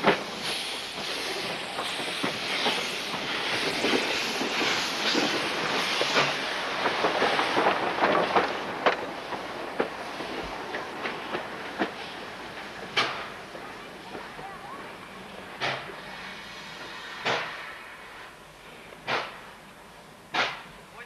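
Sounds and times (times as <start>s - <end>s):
train wheels rushing on track: 0.0s - 21.0s.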